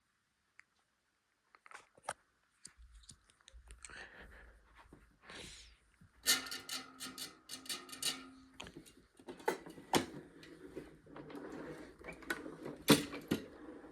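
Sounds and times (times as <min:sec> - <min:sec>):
handling clicks and knocks: 0:06.2 - 0:10.2.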